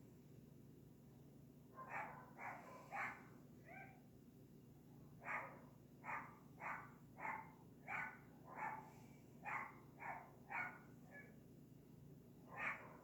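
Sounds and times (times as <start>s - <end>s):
dog barking: 1.8s - 4.0s, 5.2s - 11.3s, 12.5s - 13.0s.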